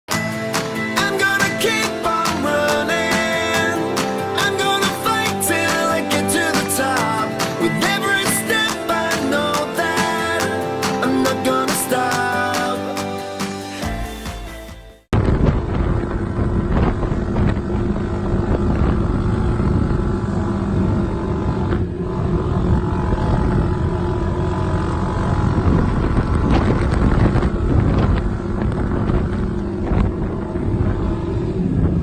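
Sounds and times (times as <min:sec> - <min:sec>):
atv engine running: 0:00.1 - 0:13.0, 0:15.2 - 0:32.0
wind noise on microphone: 0:15.1 - 0:32.0.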